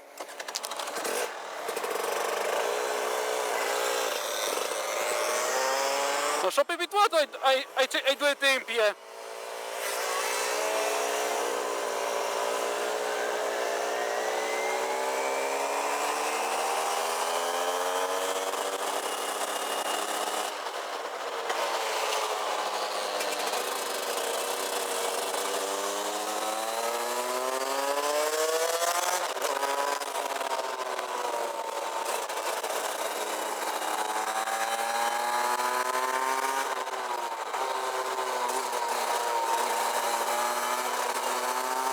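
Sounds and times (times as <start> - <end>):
kart engine accelerating: 0.0 - 6.4, 9.0 - 41.9.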